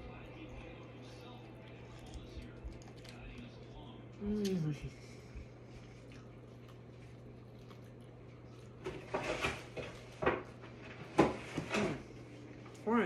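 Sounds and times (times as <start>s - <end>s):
steady low hum: 0.0s - 13.0s
person chewing corn: 0.2s - 4.6s, 5.4s - 9.4s.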